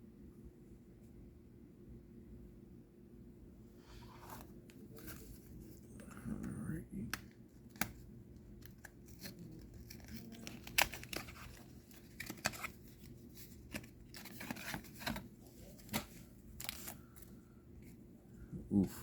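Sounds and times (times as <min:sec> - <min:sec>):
low steady hum: 0:00.0 - 0:19.0
cards and wrapper handled: 0:07.1 - 0:17.4.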